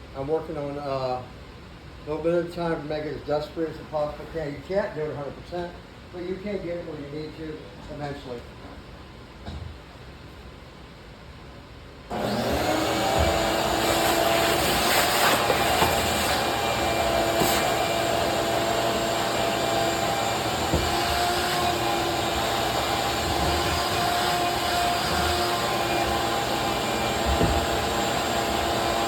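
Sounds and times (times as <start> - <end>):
shop vacuum motor running: 12.1 - 29.0.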